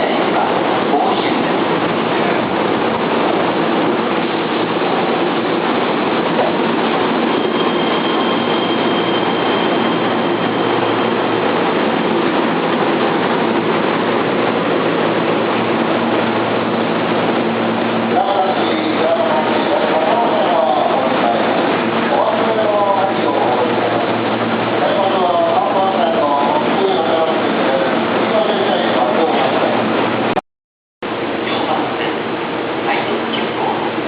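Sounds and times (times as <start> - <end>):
wheels rumbling on rail: 0.0 - 30.4, 31.1 - 34.0
faint high whine: 7.1 - 11.5.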